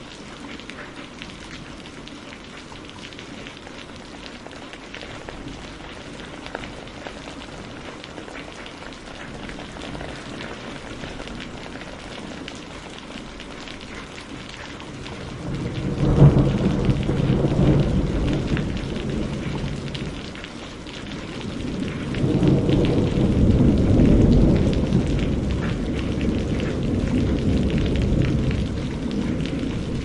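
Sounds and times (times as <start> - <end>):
steady rain: 0.0 - 30.0
thunder rolling: 14.9 - 20.4, 21.0 - 30.0.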